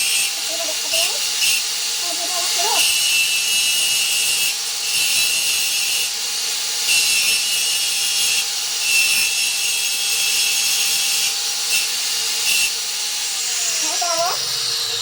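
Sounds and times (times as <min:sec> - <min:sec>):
welding arc hissing and crackling: 0:00.0 - 0:11.8.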